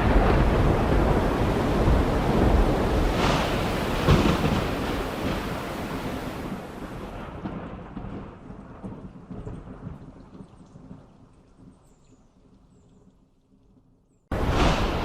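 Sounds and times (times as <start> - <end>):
heavy rain: 0.0 - 11.0, 14.3 - 15.0
thunder rumbling: 0.0 - 11.7, 14.3 - 15.0.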